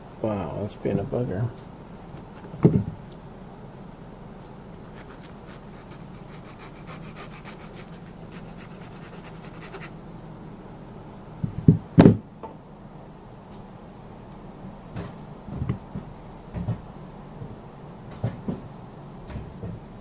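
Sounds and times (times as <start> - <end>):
fine scratching strokes: 4.4 - 10.0.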